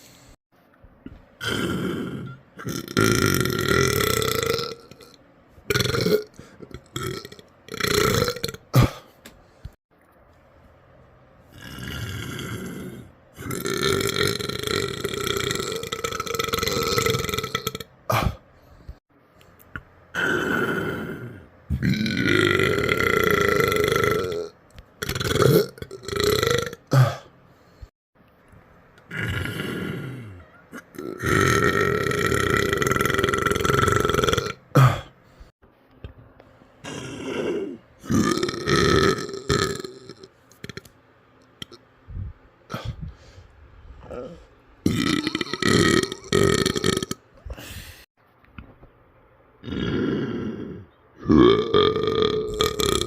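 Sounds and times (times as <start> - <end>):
man burping loudly: 1.4 - 9.1, 11.5 - 18.4, 20.1 - 27.3, 29.0 - 35.1, 36.8 - 40.9, 44.1 - 47.2, 49.6 - 53.0.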